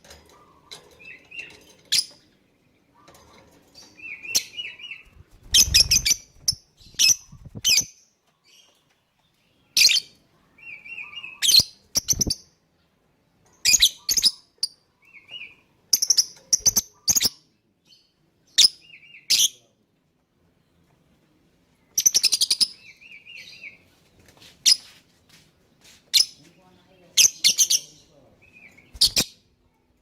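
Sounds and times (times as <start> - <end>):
lovebird chirping and warbling: 4.0 - 8.0, 9.8 - 12.5, 13.6 - 14.5, 28.6 - 29.4.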